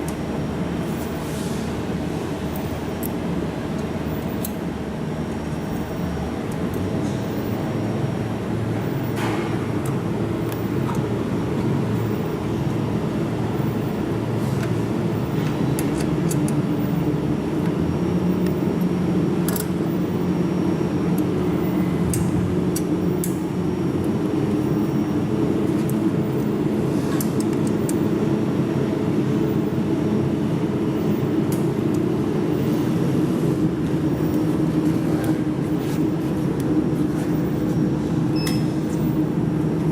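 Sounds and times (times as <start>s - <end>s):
mechanical hum: 0.0s - 39.9s.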